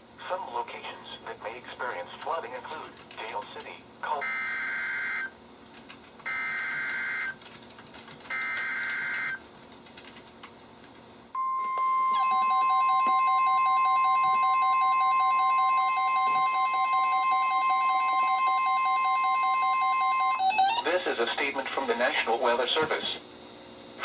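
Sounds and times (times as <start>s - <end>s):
steady warning alarm tone: 4.2s - 5.4s, 6.3s - 7.4s, 8.3s - 9.4s, 11.4s - 20.9s
weather radios beeping alarms: 11.4s - 21.2s.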